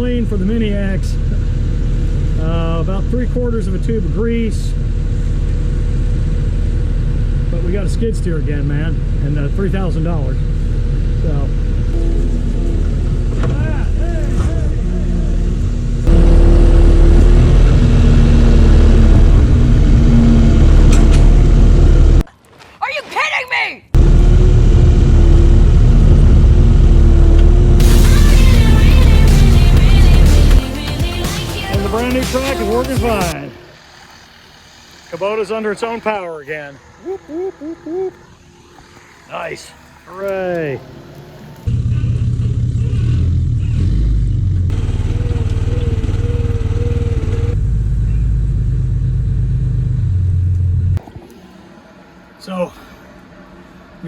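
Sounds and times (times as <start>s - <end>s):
steady whine: 0.0s - 22.2s, 24.0s - 42.7s
heavy equipment engine rumbling: 0.0s - 22.3s, 24.0s - 54.0s.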